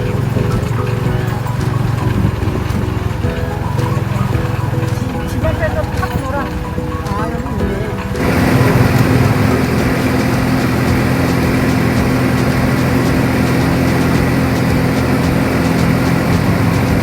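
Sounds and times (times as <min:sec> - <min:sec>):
constant noisy hiss: 0:00.0 - 0:17.0
small engine running: 0:00.0 - 0:17.0.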